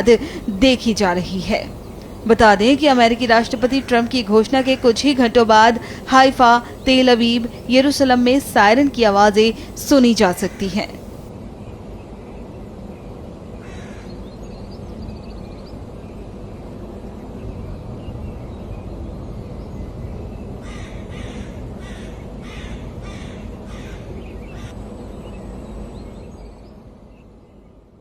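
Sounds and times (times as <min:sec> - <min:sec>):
bird calling: 0:00.0 - 0:11.3
low outdoor rumble: 0:00.0 - 0:13.6.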